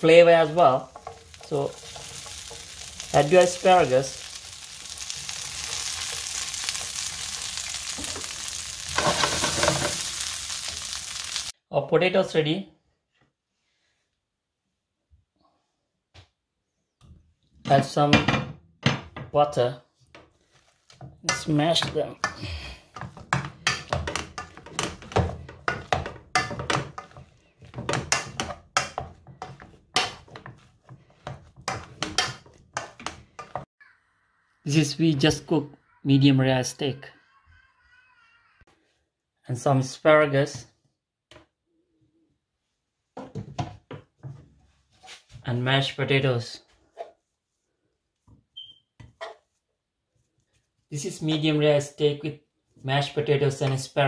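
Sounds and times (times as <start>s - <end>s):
vegetables sizzling in frying pan: 0.0s - 11.5s, 23.3s - 27.3s
utensil knocking and scraping pot: 0.4s - 10.2s, 20.1s - 33.7s.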